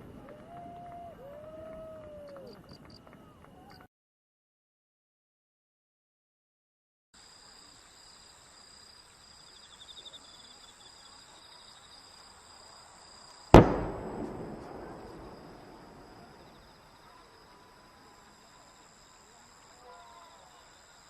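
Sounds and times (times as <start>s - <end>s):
crickets chirping: 7.2s - 21.0s
firework bang with rolling echo: 13.5s - 16.8s.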